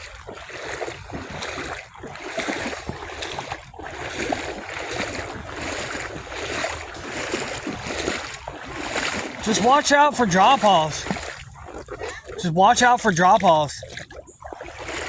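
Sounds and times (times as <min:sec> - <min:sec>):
wind rumble on microphone: 0:00.0 - 0:09.5
legs wading through water: 0:00.0 - 0:15.0.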